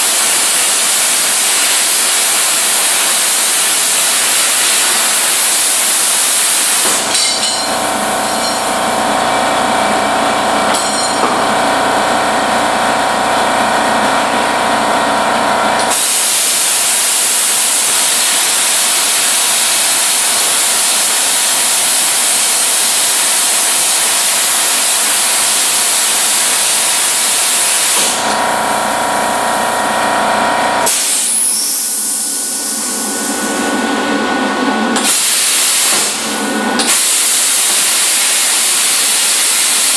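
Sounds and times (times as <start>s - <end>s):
plasma cutter air hiss: 0.0s - 9.0s, 15.8s - 29.7s, 30.8s - 33.2s, 35.0s - 39.9s.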